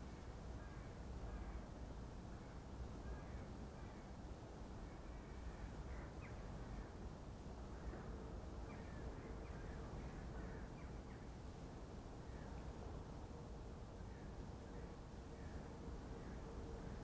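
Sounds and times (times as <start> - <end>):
faint short bird calls: 0.6 - 1.7.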